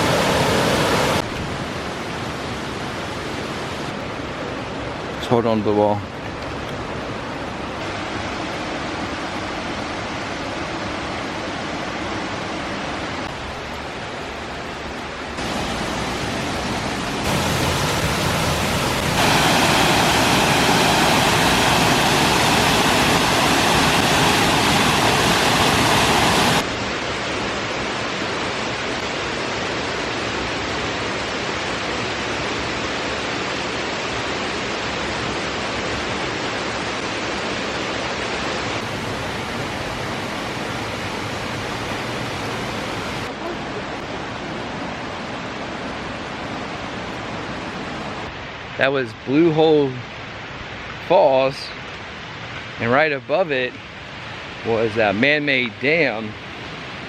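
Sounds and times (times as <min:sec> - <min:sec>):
waterfall roaring: 0:00.0 - 0:57.0.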